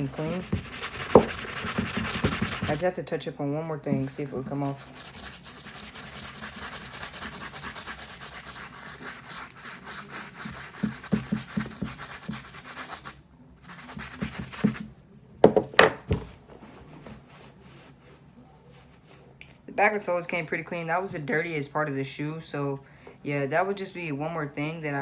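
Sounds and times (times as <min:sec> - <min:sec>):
scrubbing sneaker sole: 0:00.0 - 0:02.8, 0:04.6 - 0:14.8.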